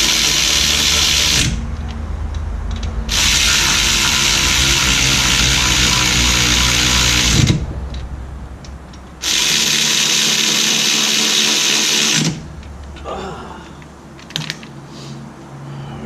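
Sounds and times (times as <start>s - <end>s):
cordless power tool running: 0.0s - 1.6s, 3.1s - 7.6s, 9.2s - 12.4s.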